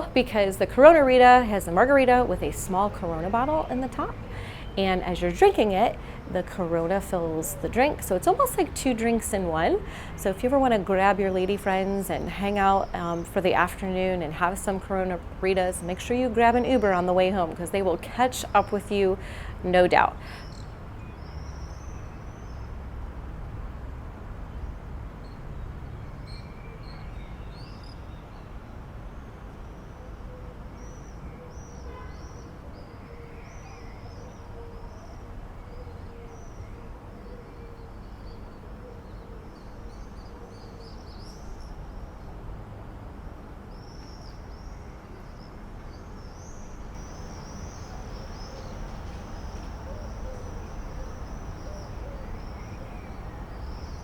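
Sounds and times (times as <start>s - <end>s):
small birds chirping: 46.2s - 54.0s
faint hum: 47.0s - 54.0s.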